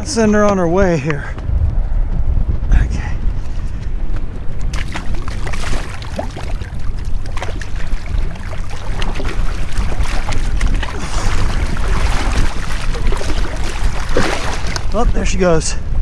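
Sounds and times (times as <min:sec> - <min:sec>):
wind buffeting microphone: 0:00.0 - 0:16.0
water sloshing and splashing: 0:04.7 - 0:15.2.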